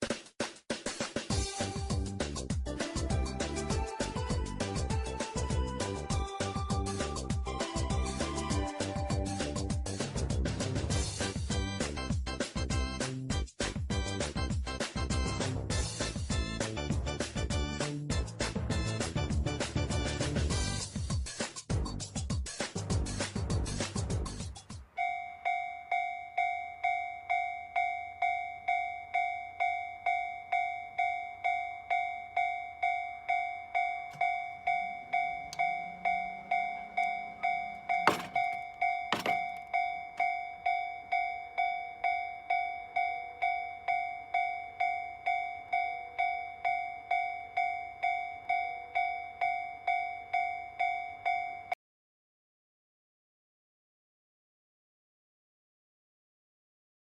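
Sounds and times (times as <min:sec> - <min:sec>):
railroad crossing alarm bell: 0:03.0 - 0:10.0, 0:25.0 - 0:51.8.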